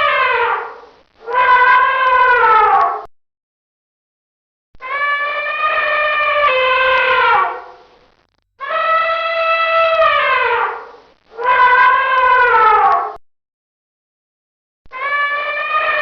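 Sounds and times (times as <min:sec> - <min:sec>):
elephant trumpeting: 0:04.9 - 0:07.8, 0:08.6 - 0:13.0.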